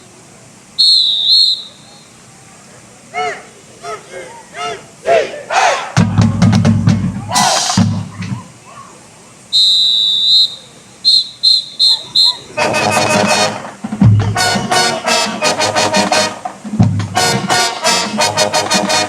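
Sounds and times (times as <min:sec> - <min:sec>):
whistle blasts: 0:00.8 - 0:02.2, 0:09.5 - 0:15.2
marching band brass playing: 0:05.0 - 0:08.1, 0:11.9 - 0:19.0
bass drum hits: 0:16.7 - 0:17.5.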